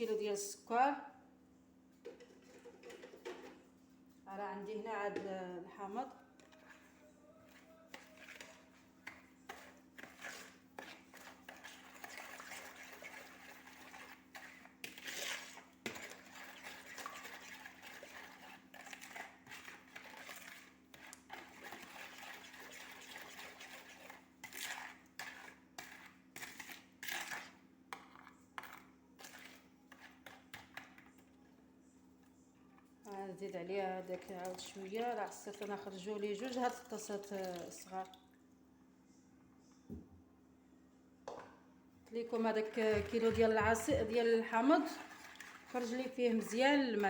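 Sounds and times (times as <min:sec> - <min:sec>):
faint steady hum: 0:27.7 - 0:47.0.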